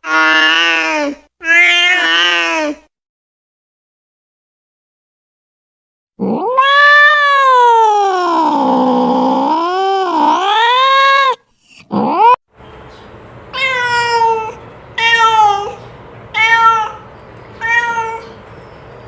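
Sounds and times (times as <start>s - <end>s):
cat yowling and meowing: 0.0s - 2.8s, 6.2s - 12.4s, 13.5s - 17.0s, 17.6s - 18.4s.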